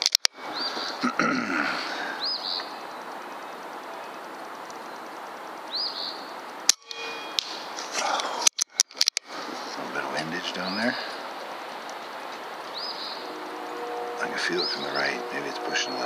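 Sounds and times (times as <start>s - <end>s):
sharp clicks: 0.0s - 0.4s, 8.2s - 9.3s
steady outdoor hiss: 0.0s - 16.0s
bird chirping: 0.4s - 1.0s, 1.8s - 7.7s, 12.0s - 16.0s.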